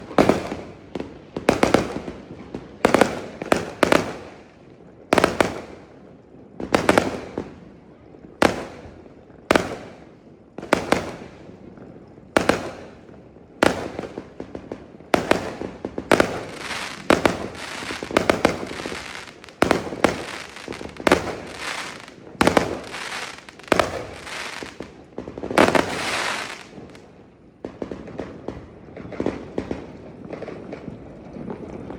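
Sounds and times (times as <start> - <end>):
fireworks bangs: 0.0 - 4.4, 5.2 - 5.8, 10.6 - 11.3, 12.4 - 31.9
crackling hiss of fireworks: 0.0 - 31.9.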